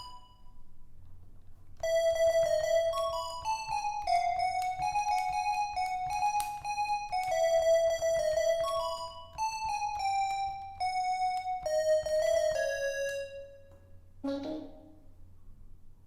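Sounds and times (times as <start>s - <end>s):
keyboard playing simple melody: 0.0s - 0.7s, 1.8s - 15.1s.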